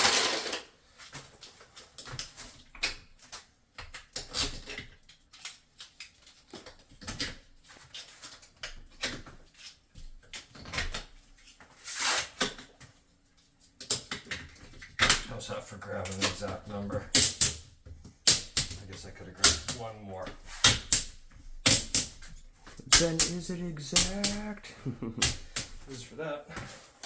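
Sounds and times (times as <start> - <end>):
ceramic tiles clicking and knocking: 20.7 - 24.5.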